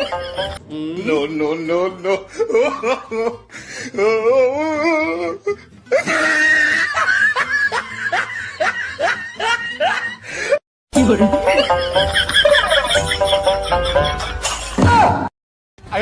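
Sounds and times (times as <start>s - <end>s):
comic laughter: 0.0s - 0.6s, 2.0s - 3.5s, 5.9s - 14.8s
music: 0.0s - 2.4s, 3.4s - 15.3s.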